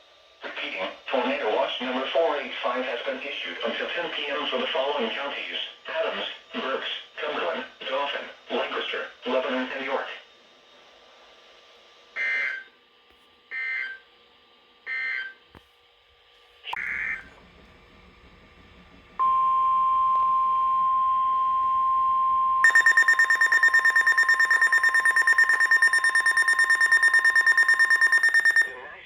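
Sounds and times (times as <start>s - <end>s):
steady warning alarm tone: 19.2s - 28.8s
rapid pulsing alarm beep: 22.6s - 28.8s.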